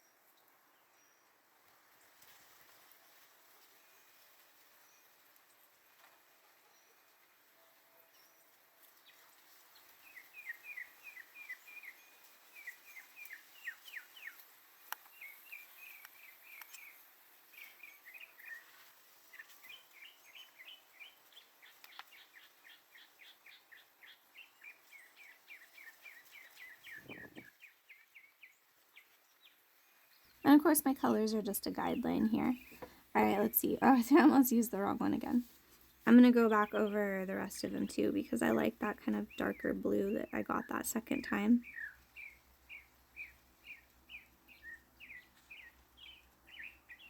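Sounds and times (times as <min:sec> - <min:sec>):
bird chirping: 0:15.0 - 0:35.4, 0:36.1 - 0:47.0.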